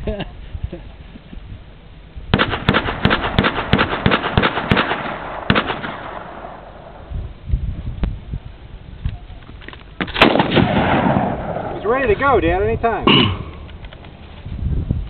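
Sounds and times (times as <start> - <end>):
rifle firing rapid shots: 2.3 - 6.7, 10.1 - 11.8
gunshot echo: 2.3 - 7.0, 10.0 - 11.8.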